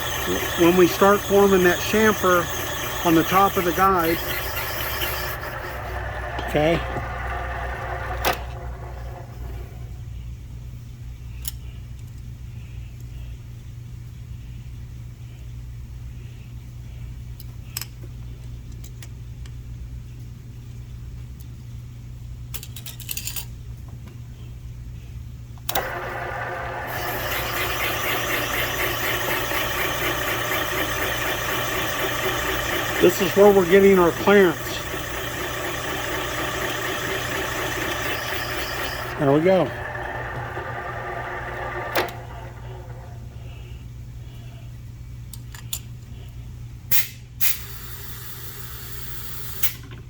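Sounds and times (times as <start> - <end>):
tool cutting metal: 0.0 - 9.6, 25.7 - 43.0
machine humming steadily: 0.0 - 10.2, 25.6 - 46.4.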